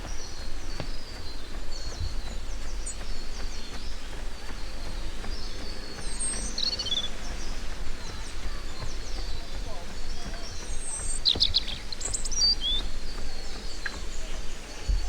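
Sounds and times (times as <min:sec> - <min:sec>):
songbirds chirping: 0:00.0 - 0:15.0
steady low rumble: 0:00.0 - 0:15.0.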